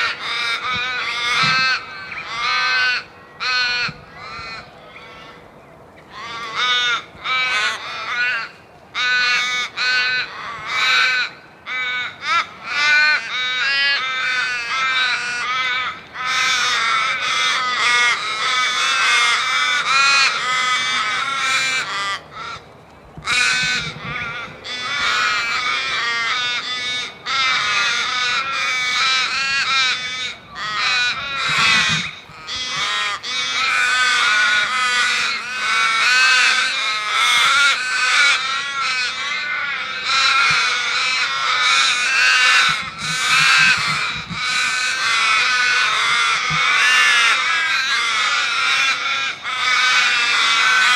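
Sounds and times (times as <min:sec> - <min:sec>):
crows cawing: 0:00.0 - 0:05.4, 0:06.1 - 0:50.9.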